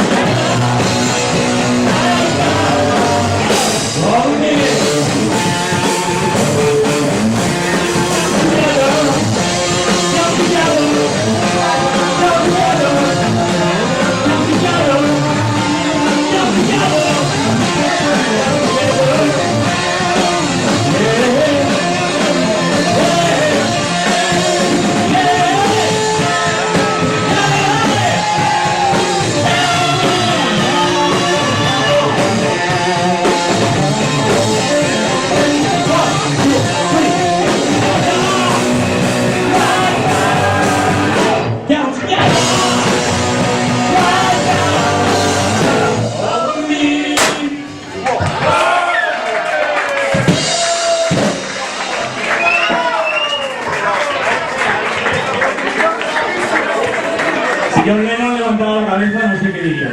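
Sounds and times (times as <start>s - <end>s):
live rock band playing: 0.0s - 46.4s, 50.0s - 54.1s
person singing: 0.0s - 47.8s.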